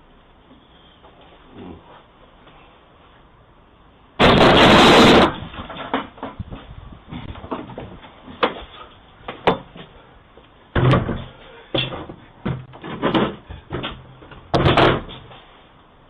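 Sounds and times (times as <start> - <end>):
irregular knocks and bangs: 10.7 - 15.1.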